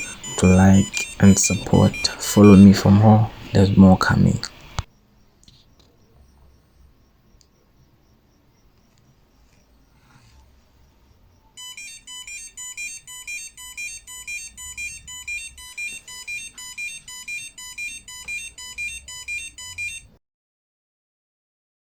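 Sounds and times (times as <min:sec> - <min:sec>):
smoke detector buzzer beeping: 0:00.0 - 0:05.3, 0:10.8 - 0:20.2.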